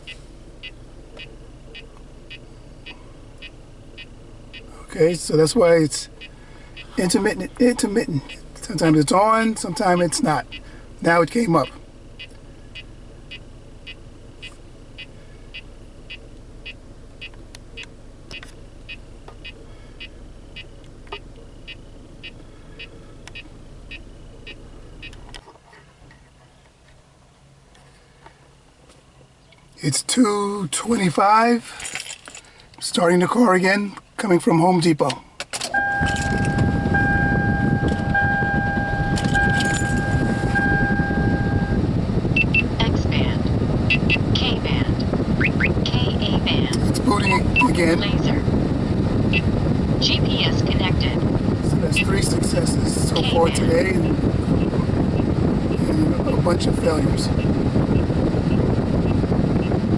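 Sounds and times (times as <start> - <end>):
car engine idling: 0.0 - 59.9
high-pitched beeps: 35.8 - 41.8, 47.1 - 47.9
pulsing electronic warning tone: 35.8 - 48.4, 49.2 - 51.2, 51.9 - 55.3.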